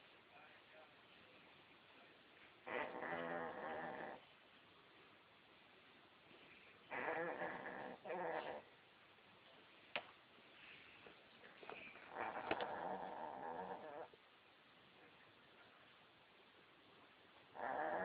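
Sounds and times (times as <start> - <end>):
puppy snoring: 2.6 - 4.3, 6.8 - 8.7, 11.8 - 14.2, 17.5 - 18.0.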